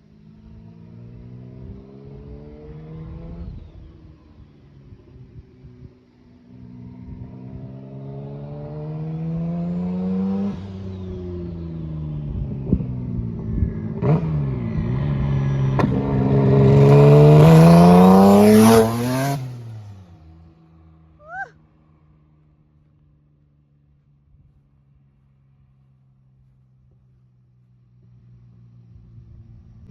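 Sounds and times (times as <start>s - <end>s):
car engine accelerating hard: 6.6s - 20.9s.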